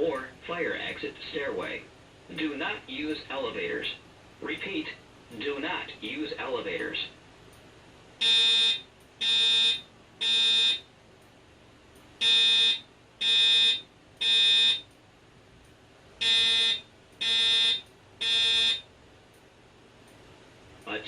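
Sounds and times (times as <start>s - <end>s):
buzzy evacuation alarm tone: 8.2s - 10.8s, 12.2s - 14.9s, 16.2s - 18.9s.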